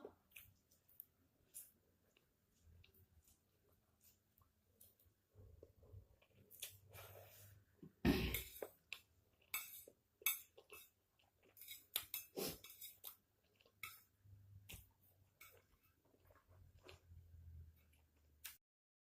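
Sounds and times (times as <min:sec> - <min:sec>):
cutlery clinking against a plate: 0:09.4 - 0:13.2, 0:13.8 - 0:14.1.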